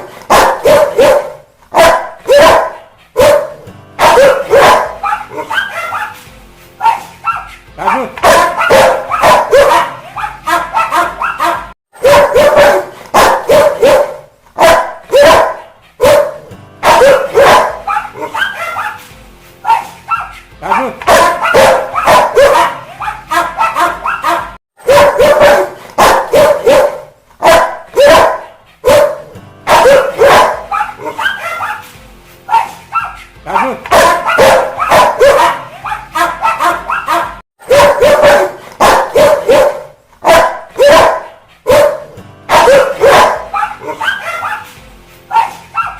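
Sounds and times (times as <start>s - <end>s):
dog barking angrily: 0.0s - 6.2s, 6.8s - 19.0s, 19.7s - 31.8s, 32.5s - 44.7s, 45.3s - 45.9s.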